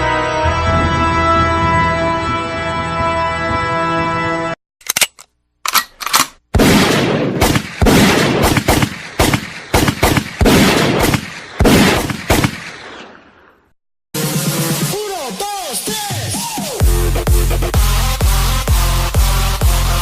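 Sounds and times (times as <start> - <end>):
gun clicks: 4.8 - 6.4
echoing gunshots: 6.5 - 13.6.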